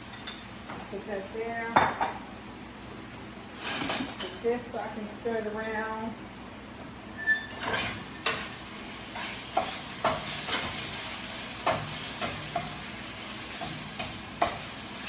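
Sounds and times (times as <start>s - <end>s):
chicken sizzling in oil: 7.6s - 15.0s
utensil clacking against pan: 9.2s - 10.8s, 13.5s - 14.7s.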